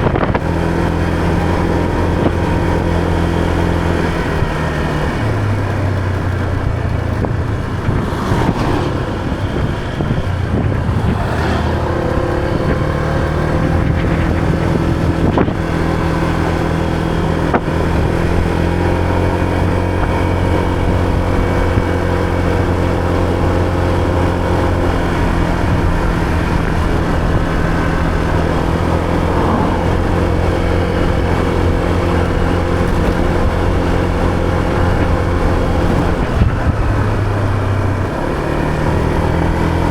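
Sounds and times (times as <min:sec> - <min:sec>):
motor scooter engine running: 0:00.0 - 0:39.9.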